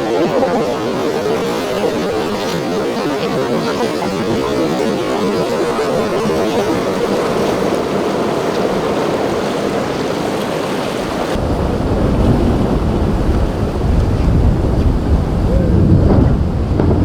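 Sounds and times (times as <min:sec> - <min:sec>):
rough surf: 0:00.0 - 0:17.0
wind on microphone: 0:00.0 - 0:17.0
heavy low wind rumble: 0:11.4 - 0:17.0.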